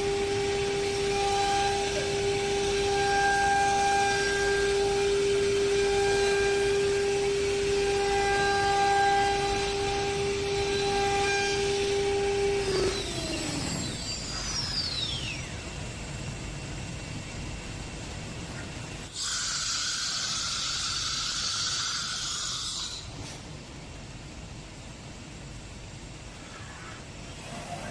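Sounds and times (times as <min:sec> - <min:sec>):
router spindle whining: 0:00.0 - 0:15.9
compressed air hiss: 0:19.0 - 0:23.5.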